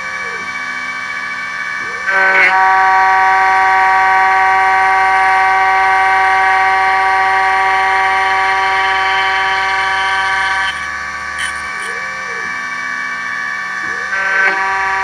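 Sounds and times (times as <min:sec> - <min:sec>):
key cutter spindle whining: 0:04.8 - 0:14.9.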